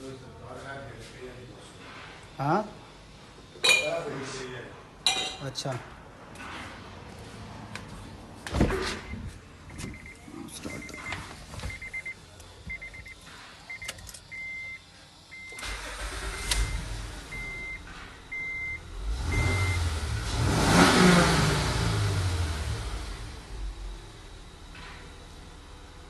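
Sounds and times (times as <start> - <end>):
dashboard warning chime beeping: 9.7 - 20.0
car engine starting and revving: 15.5 - 26.0.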